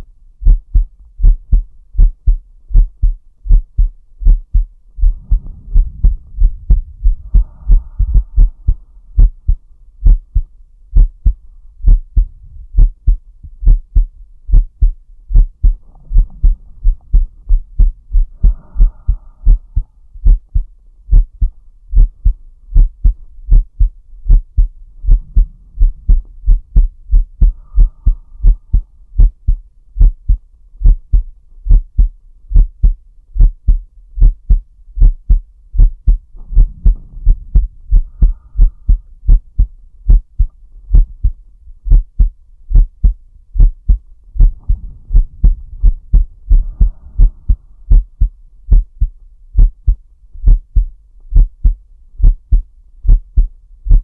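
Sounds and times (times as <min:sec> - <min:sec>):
heartbeat: 0:00.0 - 0:54.0
slow deep breaths: 0:04.5 - 0:12.9, 0:15.6 - 0:23.2, 0:23.8 - 0:29.2, 0:36.1 - 0:39.7, 0:43.9 - 0:48.4.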